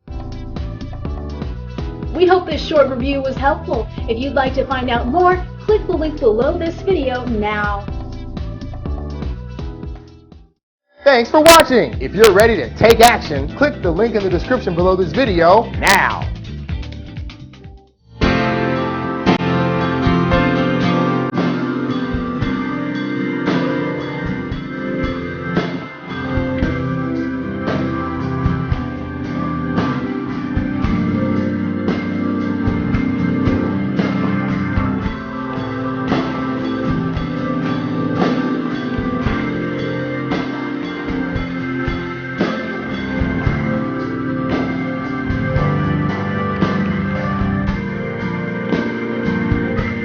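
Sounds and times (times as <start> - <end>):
guitar: 11.0 - 50.0
organ or keyboard: 11.4 - 16.4, 18.2 - 50.0
drum beat: 11.4 - 17.7.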